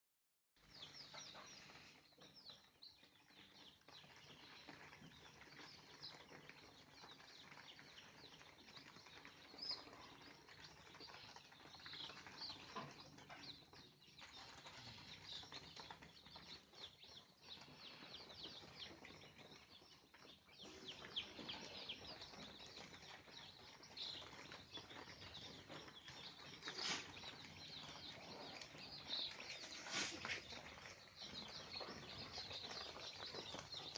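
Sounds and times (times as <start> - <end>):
chickens chirping and calling: 0.6 - 33.9.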